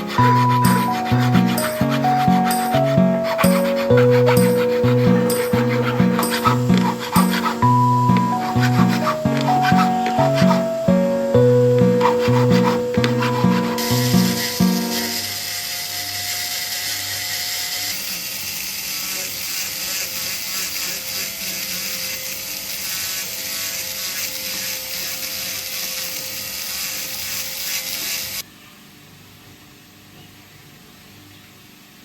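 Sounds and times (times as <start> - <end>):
tool rubbing against metal ring: 0.0 - 10.8, 11.8 - 15.2.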